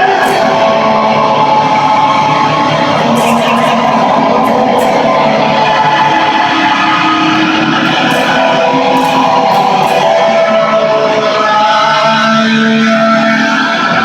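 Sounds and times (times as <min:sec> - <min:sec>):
distorted electric guitar: 0:00.0 - 0:14.0.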